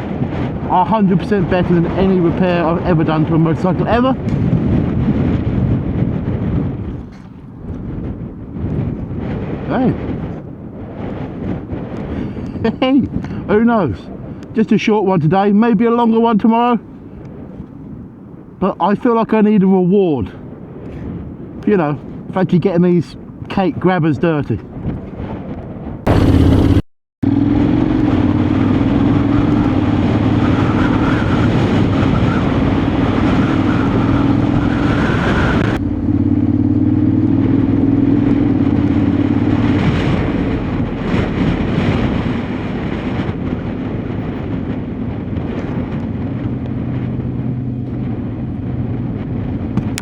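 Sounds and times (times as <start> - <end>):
road and wind noise: 0.0 - 50.0
motorcycle engine running: 26.1 - 31.1, 32.8 - 50.0.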